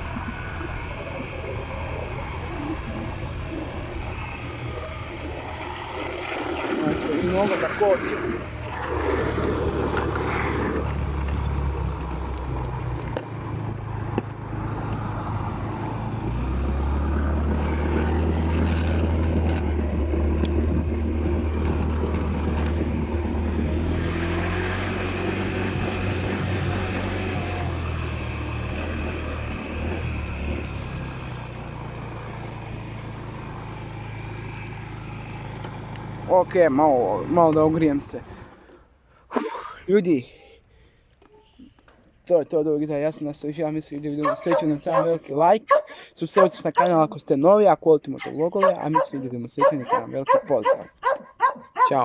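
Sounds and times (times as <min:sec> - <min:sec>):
scooter engine running: 0:00.0 - 0:38.6, 0:48.2 - 0:52.0.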